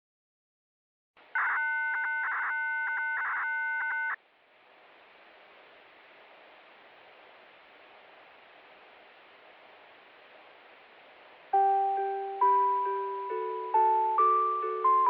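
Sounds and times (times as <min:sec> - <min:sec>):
radio hiss: 0:04.1 - 0:12.4.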